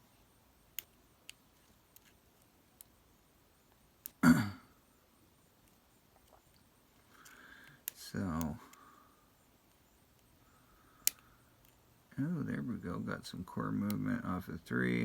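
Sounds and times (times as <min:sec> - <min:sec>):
person clearing throat: 0:04.2 - 0:04.7.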